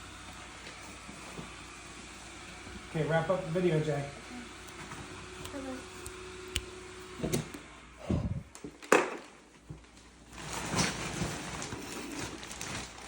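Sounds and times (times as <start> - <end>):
rustling: 9.8 - 13.0.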